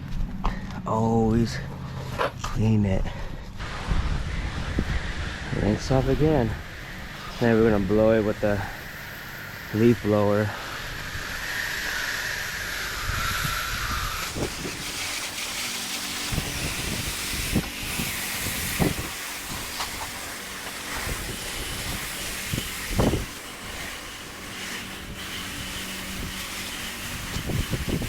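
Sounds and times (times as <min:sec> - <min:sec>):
wind buffeting microphone: 0:02.9 - 0:28.0
water spray hissing: 0:03.6 - 0:28.0.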